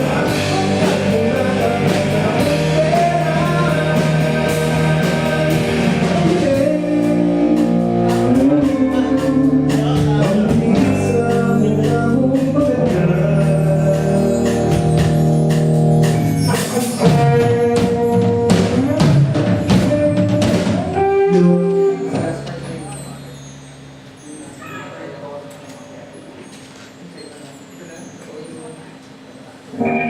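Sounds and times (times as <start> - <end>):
person singing long notes: 0.0 - 14.9
electric guitar: 0.0 - 24.0, 29.7 - 30.0
drum kit: 0.0 - 24.1.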